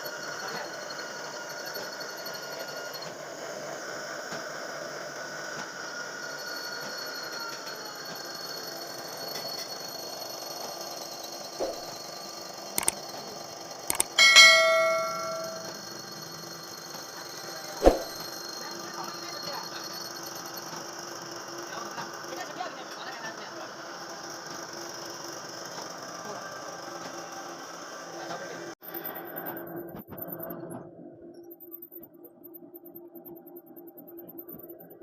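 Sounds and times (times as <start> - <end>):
sharp metal knocks: 11.6 - 11.9, 13.9 - 15.7
ringing metal clang: 11.6 - 12.0, 13.9 - 15.8, 17.8 - 18.2.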